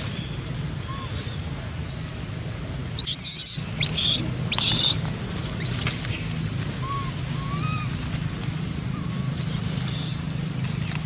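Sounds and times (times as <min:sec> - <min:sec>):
steady low hum: 0:00.1 - 0:11.0
monkey shrieking: 0:03.0 - 0:05.0.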